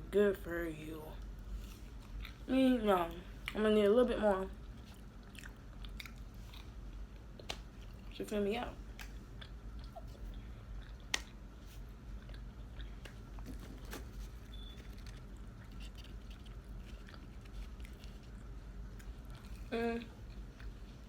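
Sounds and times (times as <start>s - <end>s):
person chewing food: 1.2s - 2.5s, 4.6s - 8.2s, 8.9s - 13.5s, 14.2s - 21.0s.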